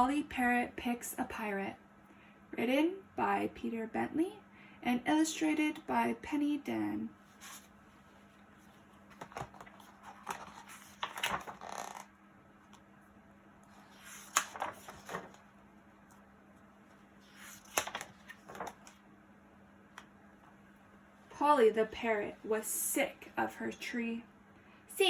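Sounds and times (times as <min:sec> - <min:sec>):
faint steady hum: 0:00.0 - 0:25.0
paper pages rustling: 0:07.3 - 0:12.1, 0:13.7 - 0:16.2, 0:16.9 - 0:19.0.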